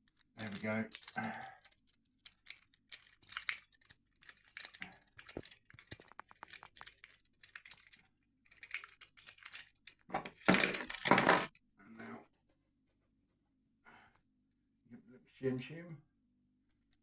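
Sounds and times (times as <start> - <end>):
metal lock tools clicking and rattling: 0.0 - 11.6.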